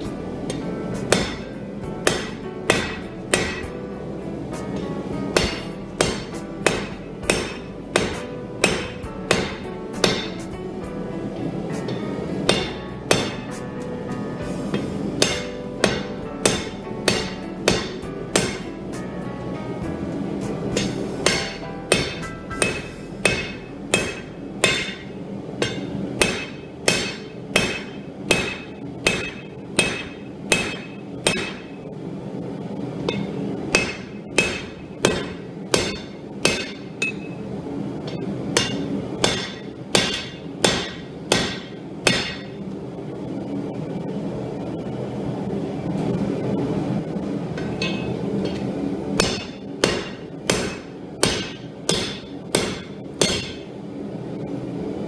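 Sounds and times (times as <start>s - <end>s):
steady background rush: 0.0s - 55.0s
hammer striking steel on anvil: 0.5s - 3.8s, 4.6s - 10.6s, 11.8s - 19.1s, 20.5s - 31.8s, 33.1s - 37.4s, 38.0s - 42.6s, 47.6s - 48.6s, 49.2s - 53.7s.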